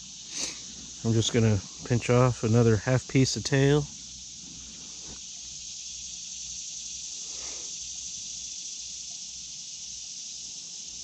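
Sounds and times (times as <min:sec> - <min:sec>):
insect chorus drone: 0:00.0 - 0:11.0
faint rustle: 0:03.9 - 0:05.6.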